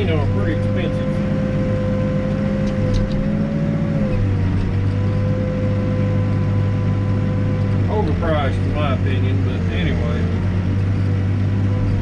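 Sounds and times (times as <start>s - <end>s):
backhoe diesel engine: 0.0s - 12.0s
steady whine: 0.0s - 12.0s.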